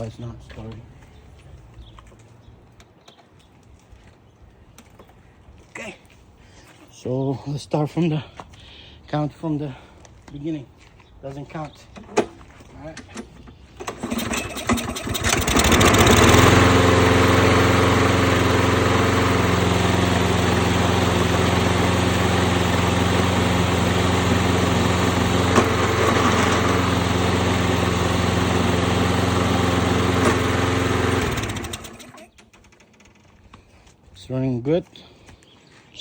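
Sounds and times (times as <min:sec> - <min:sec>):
lawn mower engine running: 0:13.0 - 0:33.4.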